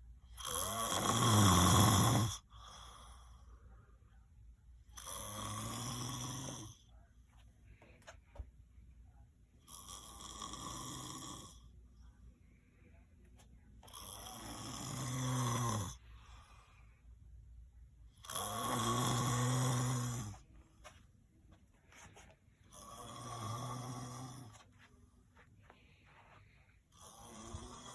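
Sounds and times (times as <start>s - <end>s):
person snoring: 0.4s - 3.5s, 5.0s - 6.8s, 9.7s - 11.6s, 13.9s - 16.5s, 18.2s - 20.4s, 22.7s - 24.6s, 26.9s - 27.9s
quiet breathing: 1.9s - 27.9s.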